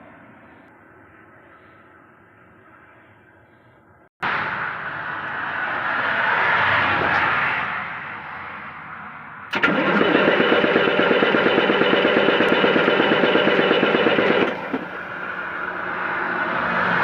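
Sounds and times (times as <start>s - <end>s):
starter motor cranking engine: 9.5s - 15.3s.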